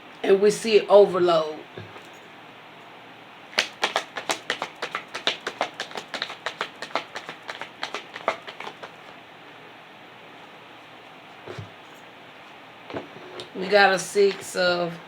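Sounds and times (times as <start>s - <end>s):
cards being shuffled: 3.6s - 9.1s.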